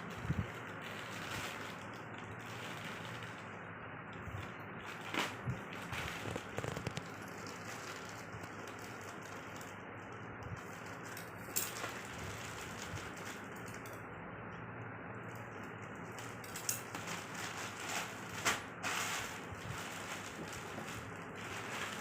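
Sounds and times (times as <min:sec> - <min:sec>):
packaging rubbing and scraping: 0:00.0 - 0:03.5, 0:04.3 - 0:09.8, 0:16.2 - 0:22.0
faint steady hum: 0:00.0 - 0:22.0.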